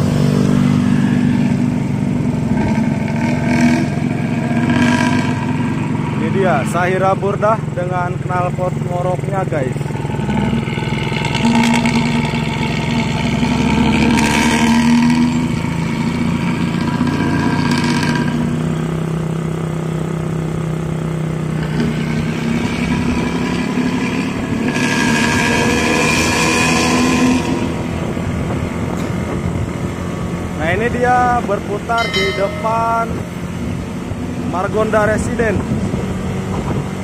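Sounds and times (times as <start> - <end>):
bus engine deep snoring growl: 0.0 - 5.8, 9.9 - 19.2, 21.5 - 29.9.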